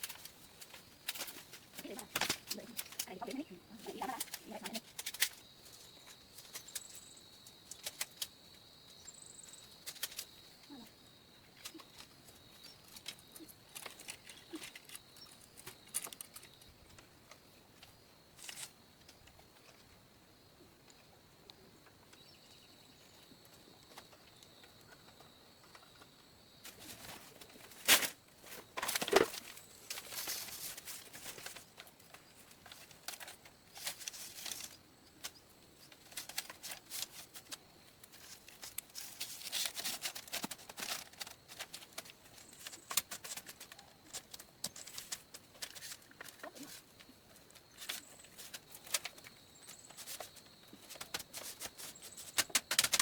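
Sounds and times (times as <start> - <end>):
clicks taps and scrapes: 35.9 - 53.0.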